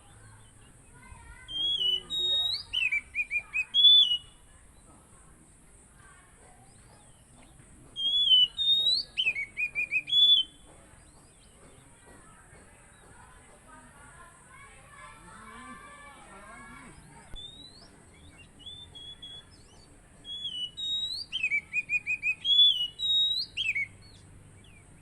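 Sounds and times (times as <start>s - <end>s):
bird singing whistled phrases: 1.4s - 4.4s, 8.0s - 11.6s, 16.7s - 24.9s.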